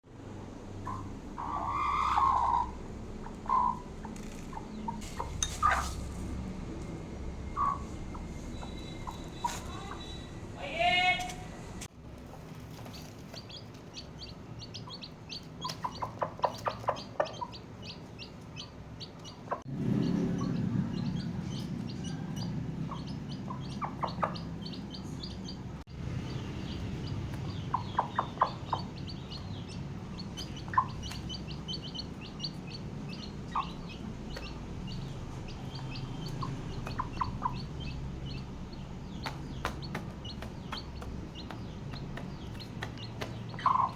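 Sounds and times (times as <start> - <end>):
low steady hum: 0.1 - 15.6
chicks peeping: 0.2 - 6.4, 7.5 - 43.9
hen clucking: 0.6 - 6.4, 7.5 - 11.5, 12.3 - 43.9.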